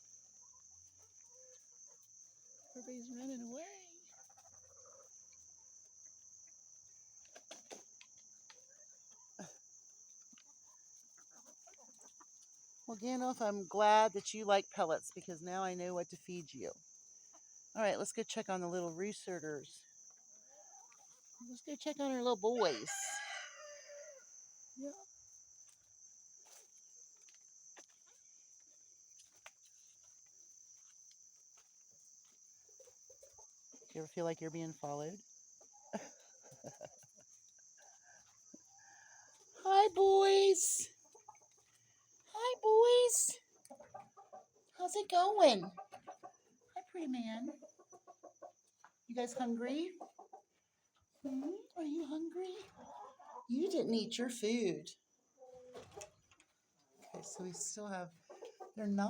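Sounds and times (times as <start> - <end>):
crickets trilling: 0.0 - 59.0
high-pitched insect drone: 21.1 - 41.1.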